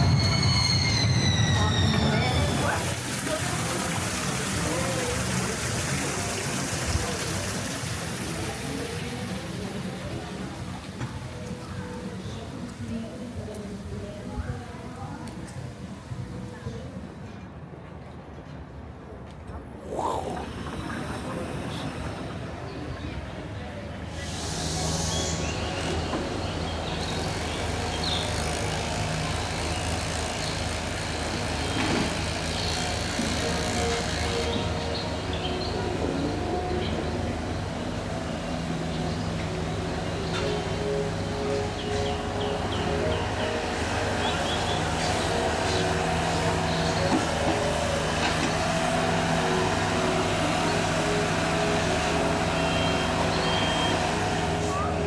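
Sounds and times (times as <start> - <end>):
steady machine drone: 0.0 - 16.5, 19.8 - 55.0
low engine hum: 19.8 - 55.0.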